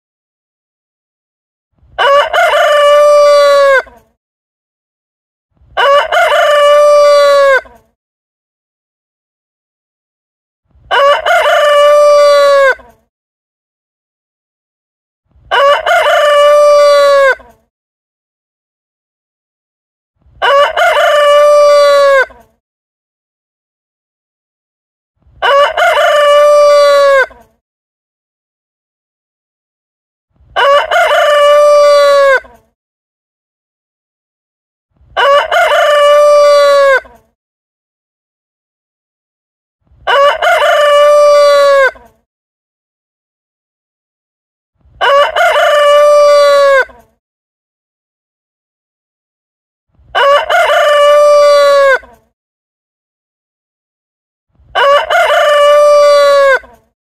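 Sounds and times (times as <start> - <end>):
rooster crowing: 2.0 - 3.9, 5.8 - 7.7, 10.9 - 12.8, 15.5 - 17.4, 20.4 - 22.3, 25.4 - 27.3, 30.6 - 32.5, 35.2 - 37.1, 40.1 - 42.0, 45.0 - 46.9, 50.2 - 52.1, 54.8 - 56.7.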